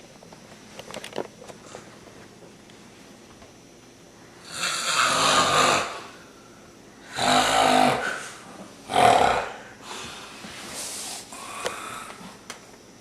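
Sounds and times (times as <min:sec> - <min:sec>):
person snoring: 0:04.4 - 0:06.2, 0:07.0 - 0:10.2, 0:11.3 - 0:12.2.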